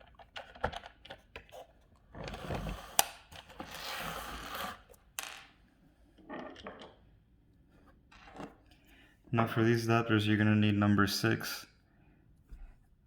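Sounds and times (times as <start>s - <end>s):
plastic parts clicking and clattering: 0.0s - 3.8s.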